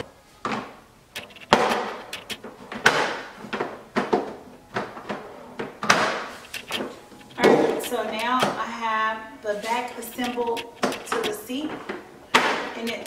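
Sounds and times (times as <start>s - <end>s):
plastic parts knocking and scraping: 1.2s - 2.5s, 6.4s - 8.6s, 10.0s - 11.4s, 12.8s - 13.0s.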